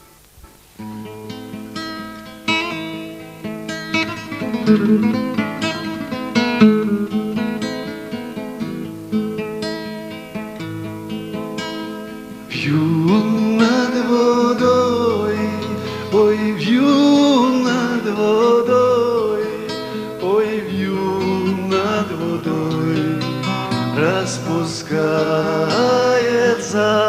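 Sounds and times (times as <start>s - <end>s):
acoustic guitar plucking: 0.0s - 27.0s
man singing: 12.5s - 27.0s.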